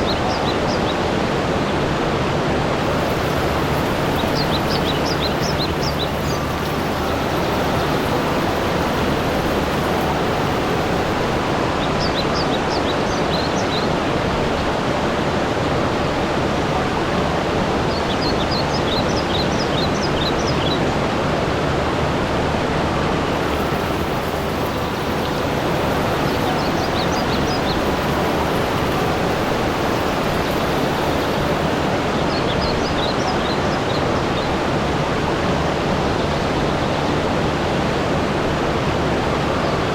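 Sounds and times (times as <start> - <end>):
rushing water: 0.0 - 39.9
small bird chirping: 3.0 - 13.8, 23.3 - 34.5.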